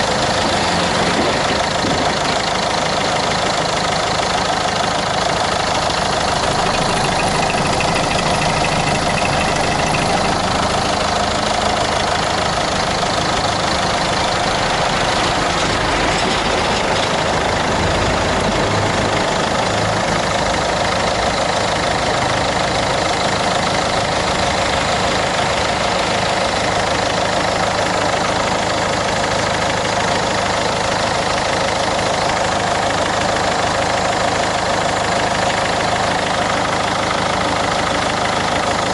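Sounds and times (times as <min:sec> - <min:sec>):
diesel engine idling: 0:00.0 - 0:38.9.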